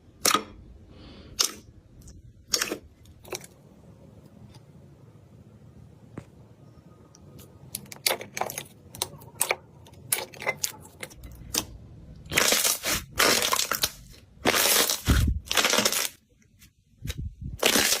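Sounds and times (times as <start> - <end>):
slime squishing: 0.0 - 4.8, 7.2 - 18.0
slime crackling and popping: 8.0 - 16.2, 17.6 - 18.0.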